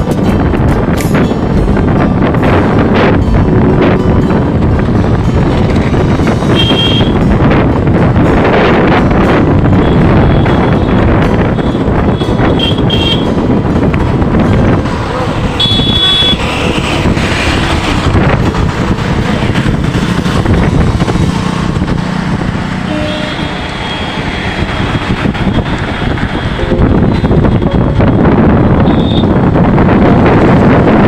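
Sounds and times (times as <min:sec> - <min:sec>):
road traffic: 0:00.0 - 0:31.0
wind buffeting the microphone: 0:00.0 - 0:31.0
short high vehicle horn toots: 0:22.9 - 0:23.6.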